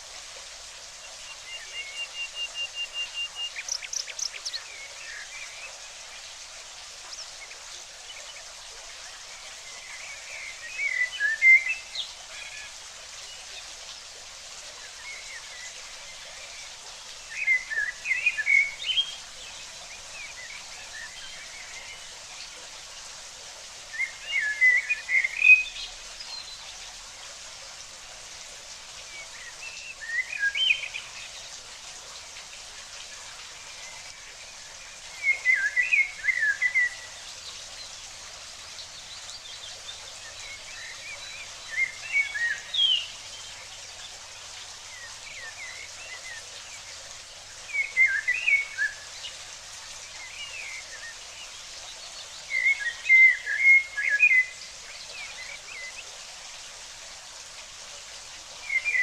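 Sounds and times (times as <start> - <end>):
songbird chirping: 1.1 - 5.7, 33.0 - 47.0.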